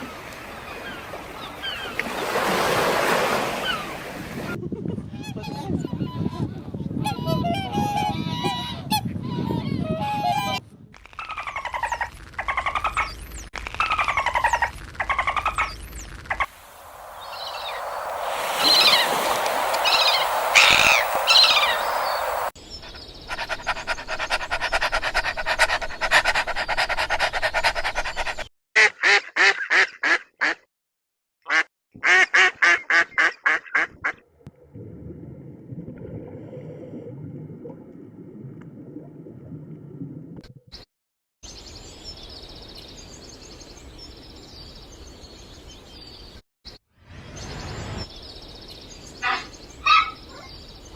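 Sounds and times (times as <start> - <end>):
rapid pulsed calls: 16.3 - 22.6
high chirps: 16.4 - 22.6.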